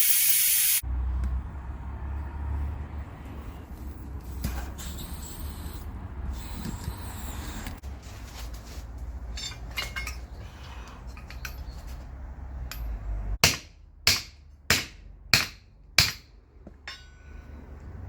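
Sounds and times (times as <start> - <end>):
tool clinks: 9.3 - 10.3
hammer striking metal: 12.7 - 17.4.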